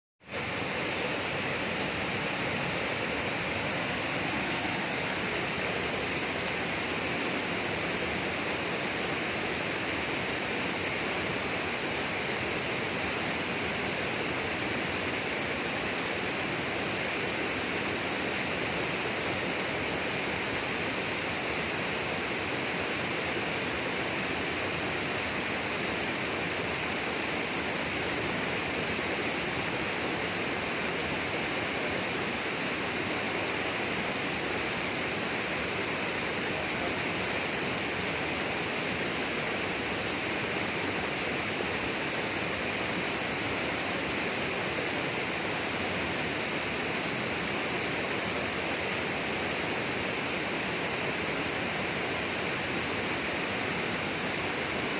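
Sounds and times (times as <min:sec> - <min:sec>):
constant high hiss: 0:00.2 - 0:54.9
flowing water rushing: 0:00.3 - 0:54.9.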